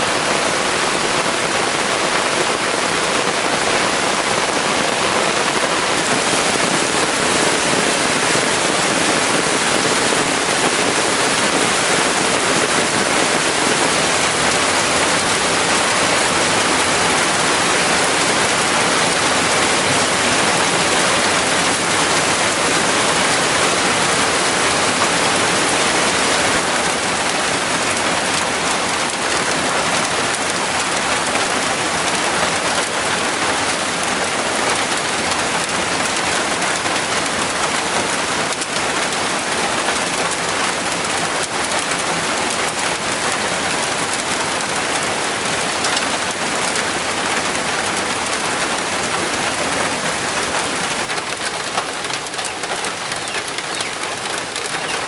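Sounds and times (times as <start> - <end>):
heavy rain: 0.0 - 55.0.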